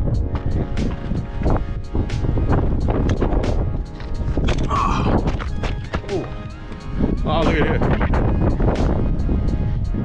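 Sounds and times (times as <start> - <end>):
wind rumble on microphone: 0.0 - 10.0
footsteps crunching on gravel: 3.0 - 6.8.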